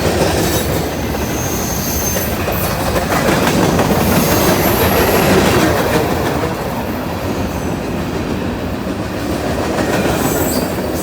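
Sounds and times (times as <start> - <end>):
train wheels rumbling on rail: 0.0 - 11.0
faint high wheel squeal: 0.5 - 2.9.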